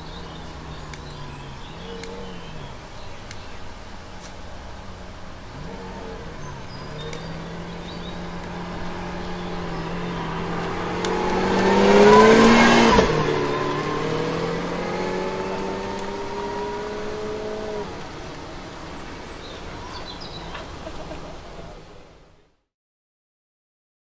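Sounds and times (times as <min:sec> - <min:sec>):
sports car accelerating past: 0:03.7 - 0:20.8.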